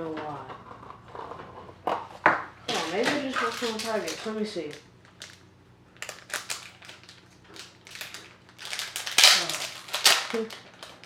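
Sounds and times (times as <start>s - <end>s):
craft pieces clicking and crinkling: 2.7s - 5.4s, 6.0s - 11.0s.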